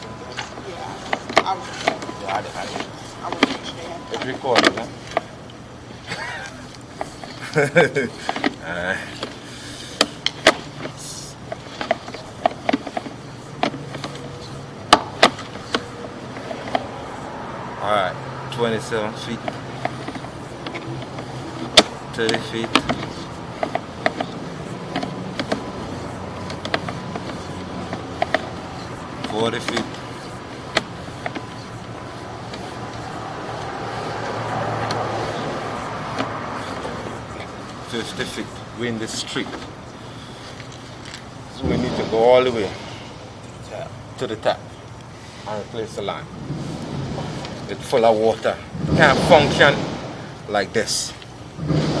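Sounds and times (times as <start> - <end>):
cable clicking and knocking: 18.8 - 38.5.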